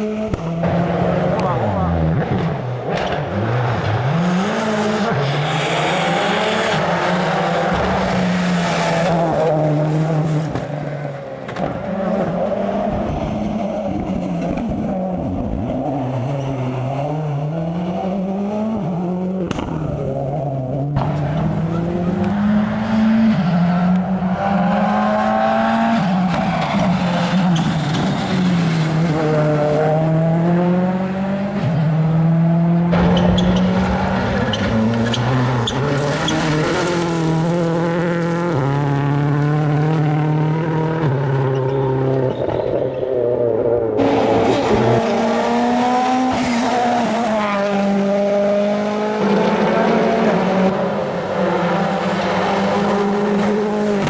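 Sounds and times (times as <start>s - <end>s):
rally car engines revving: 0.0s - 54.0s
sharp cracks: 33.0s - 36.8s.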